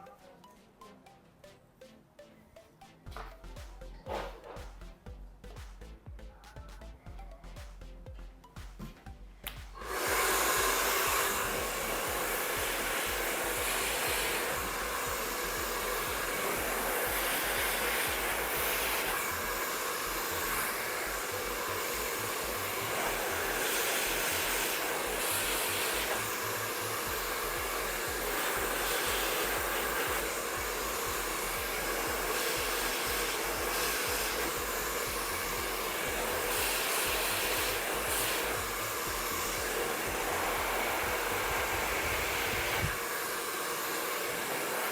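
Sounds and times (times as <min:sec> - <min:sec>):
hair dryer blowing: 0:09.4 - 0:44.9.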